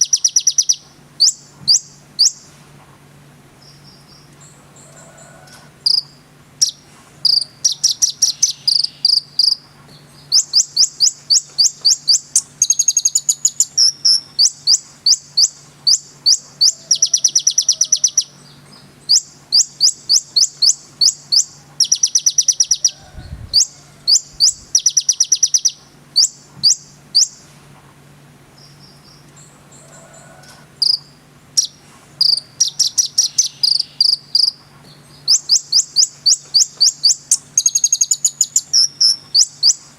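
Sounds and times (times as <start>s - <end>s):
bird chirping and trilling: 0.0s - 2.5s, 5.9s - 27.4s, 30.8s - 39.9s
faint low hum: 0.0s - 39.9s.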